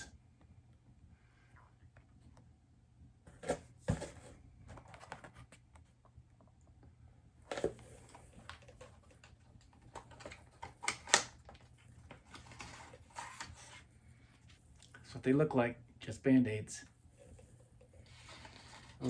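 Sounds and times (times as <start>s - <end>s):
package clicks and crinkles: 7.5s - 13.6s.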